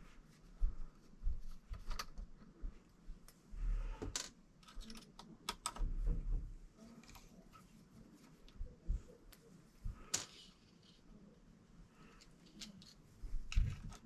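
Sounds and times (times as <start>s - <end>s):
hands handling plastic parts: 12.1s - 14.0s.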